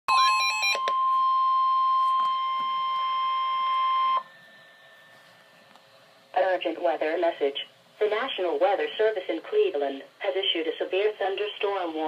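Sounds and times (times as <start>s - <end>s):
loud steady warning beep: 0.1s - 5.7s
faint radio hiss: 4.3s - 12.0s.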